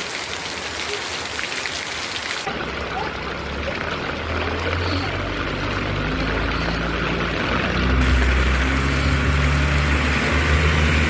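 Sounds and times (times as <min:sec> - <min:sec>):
rain hissing: 0:00.0 - 0:11.0
water rushing and splashing: 0:00.0 - 0:11.0
motor running low: 0:04.0 - 0:11.0.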